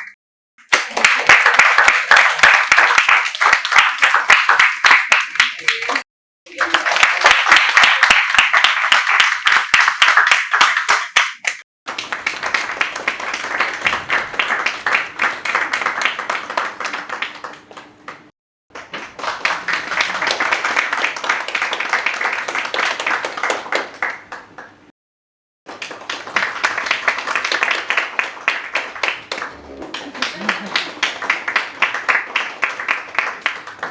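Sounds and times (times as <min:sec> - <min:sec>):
audience applause: 0:00.7 - 0:24.8, 0:25.7 - 0:33.9.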